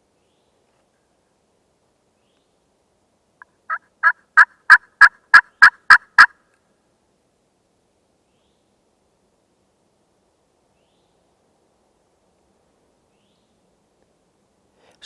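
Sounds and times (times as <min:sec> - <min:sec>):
wild turkey yelping: 0:03.7 - 0:06.3.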